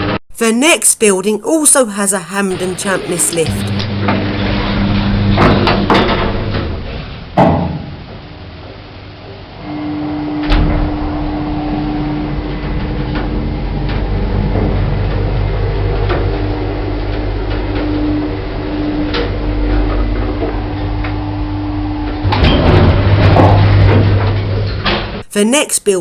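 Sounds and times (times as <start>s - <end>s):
lift motor hum: 2.5s - 7.4s, 8.0s - 25.2s
deep rumble: 10.5s - 24.8s.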